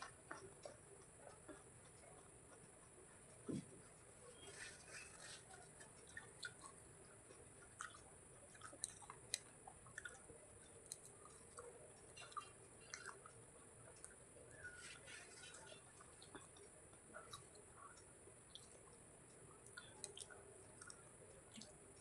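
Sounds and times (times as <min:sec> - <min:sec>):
close chewing crunches: 0:00.0 - 0:22.0
wet mouth clicks: 0:04.9 - 0:06.8, 0:07.6 - 0:14.6.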